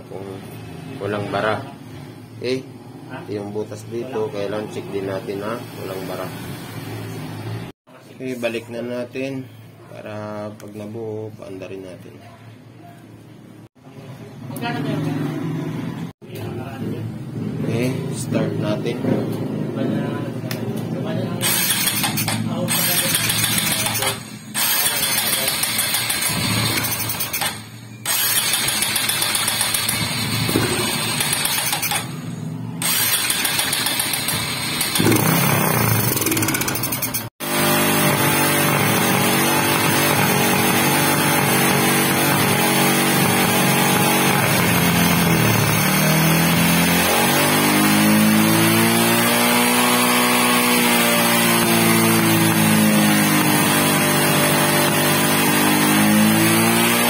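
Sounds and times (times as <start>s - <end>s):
motorcycle engine starting and running: 21.4s - 57.0s.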